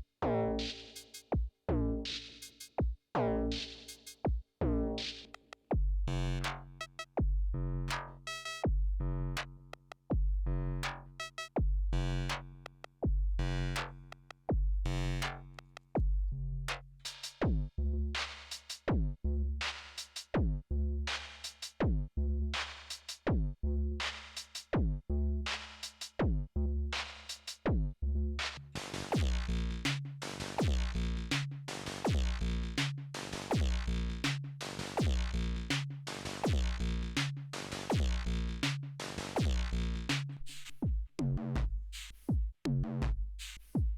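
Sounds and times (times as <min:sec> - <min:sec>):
drum machine pattern: 0:28.8 - 0:40.1.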